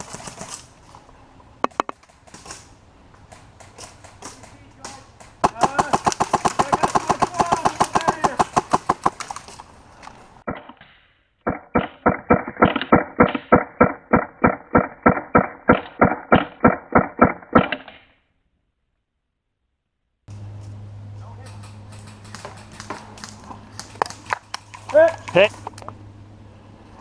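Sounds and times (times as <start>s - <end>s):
airsoft rifle firing: 5.4s - 9.3s, 11.4s - 17.9s.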